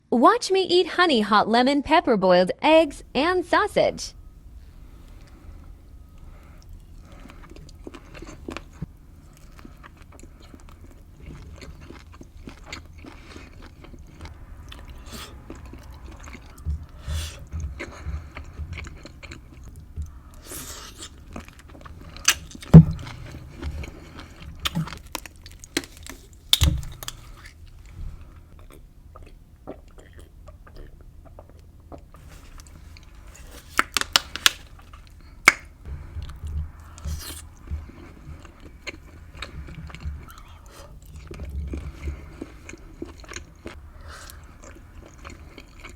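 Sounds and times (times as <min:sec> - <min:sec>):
close-miked chewing: 0:02.8 - 0:45.9
wet clicks and bites: 0:19.6 - 0:27.6, 0:33.4 - 0:35.8.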